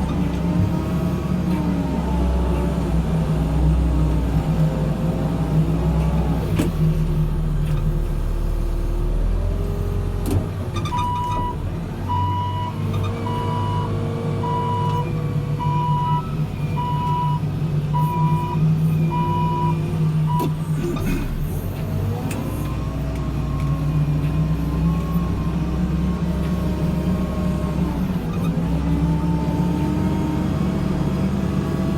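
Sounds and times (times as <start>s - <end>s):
diesel engine running: 0.0s - 31.9s
reversing alarm beeping: 11.0s - 17.4s, 18.0s - 20.5s.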